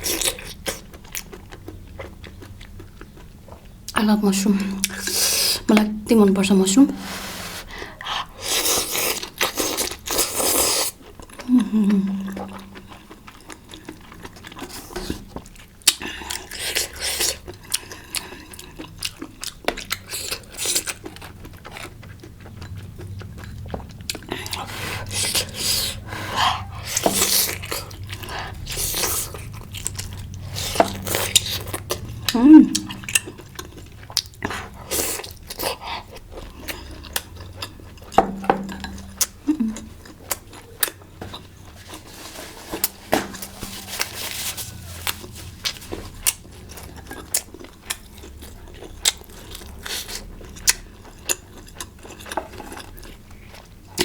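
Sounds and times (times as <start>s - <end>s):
chewing: 0.0s - 5.7s, 7.0s - 54.0s.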